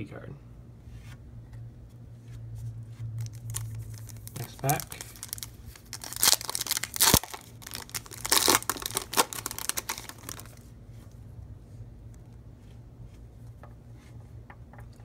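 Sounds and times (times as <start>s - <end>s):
foil wrapper tearing and crinkling: 3.2s - 10.6s.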